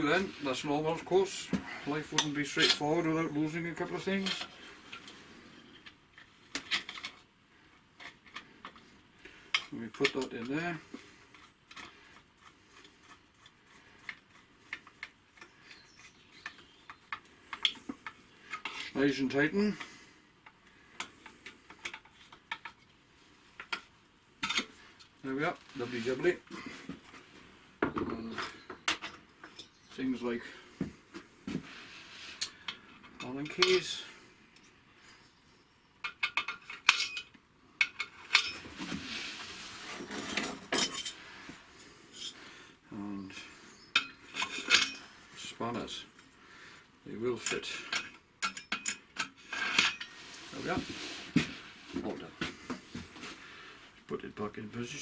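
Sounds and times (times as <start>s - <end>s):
scraping rustle: 24.6s - 27.5s, 38.1s - 42.4s, 49.4s - 53.7s.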